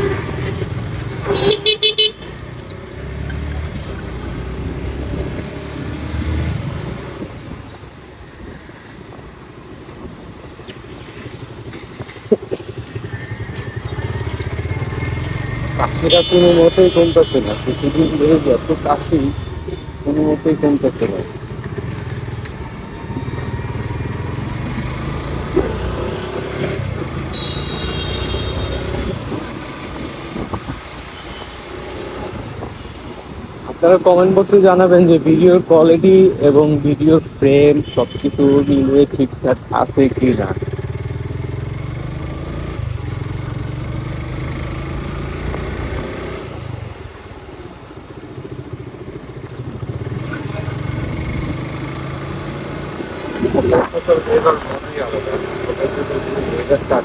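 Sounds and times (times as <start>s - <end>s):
motorcycle running: 0.0s - 8.2s, 9.1s - 57.0s
road noise: 0.0s - 57.0s
motorcycle engine running: 21.1s - 30.4s, 40.1s - 46.1s
shrill pitched tone: 27.4s - 29.0s
wind noise: 28.4s - 34.5s.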